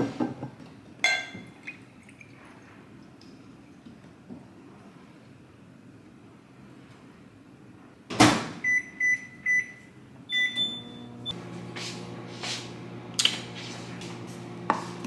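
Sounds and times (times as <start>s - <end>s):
microwave running hum: 8.6s - 15.0s
keypad beeps: 8.7s - 11.0s.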